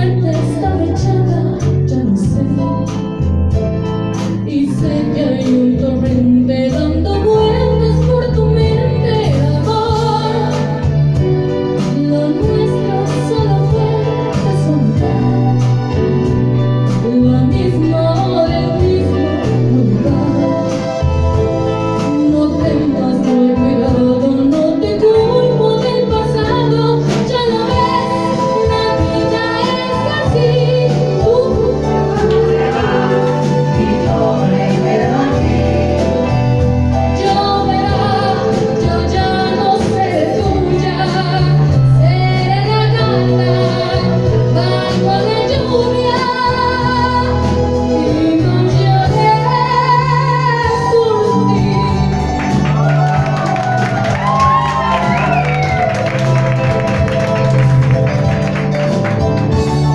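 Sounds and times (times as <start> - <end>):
live band playing a ballad: 0.0 - 59.9
person singing: 22.0 - 58.2.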